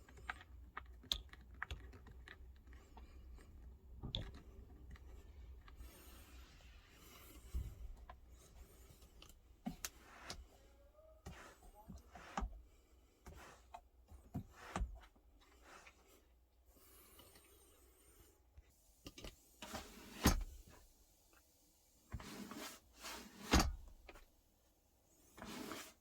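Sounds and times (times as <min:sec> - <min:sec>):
handling clicks and rubbing: 0:00.0 - 0:06.5.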